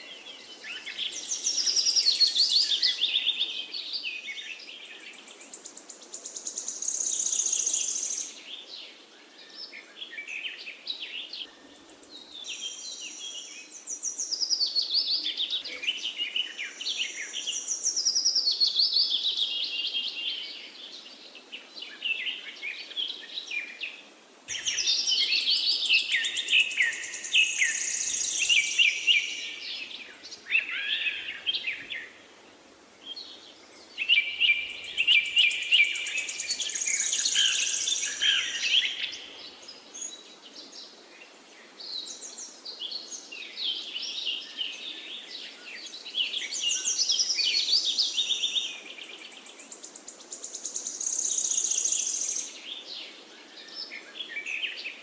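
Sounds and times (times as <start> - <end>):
faint steady hiss: 0.0 - 55.0
birds chirping and singing: 24.5 - 32.2, 33.1 - 40.8.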